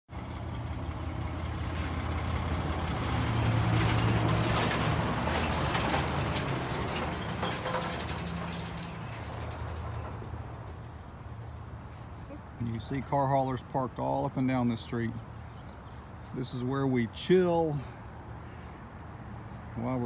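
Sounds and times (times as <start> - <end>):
heavy vehicle engine humming: 0.1 - 13.2.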